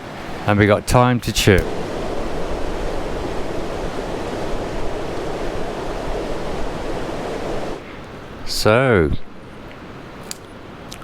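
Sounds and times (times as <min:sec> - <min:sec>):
river water rushing: 0:00.0 - 0:00.6, 0:01.3 - 0:08.5.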